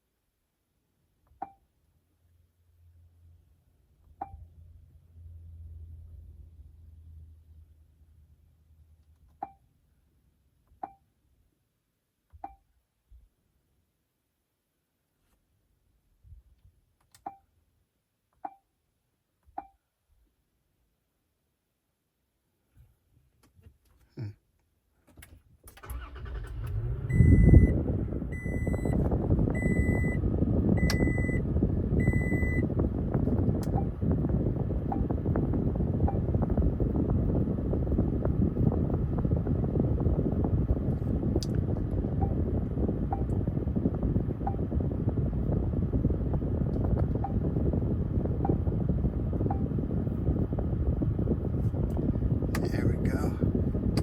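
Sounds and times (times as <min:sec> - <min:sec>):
car engine cranking and idling: 0:25.0 - 0:54.0
low hum: 0:25.9 - 0:54.0.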